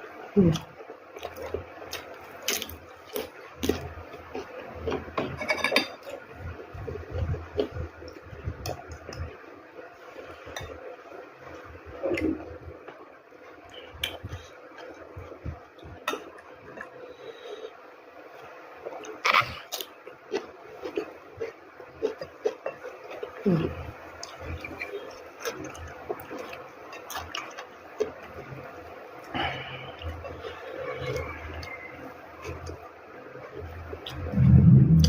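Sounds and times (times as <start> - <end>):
spoon clinking on a plate: 5.4 - 6.0.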